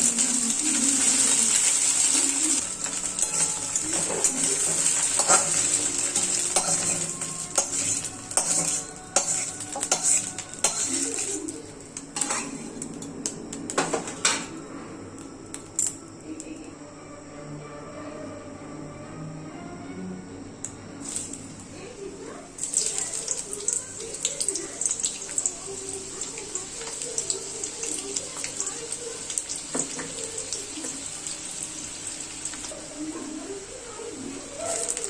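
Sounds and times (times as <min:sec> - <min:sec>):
food sizzling in a pan: 0:00.0 - 0:14.5, 0:20.9 - 0:35.0
metal spoon scraping a pan: 0:02.9 - 0:13.0.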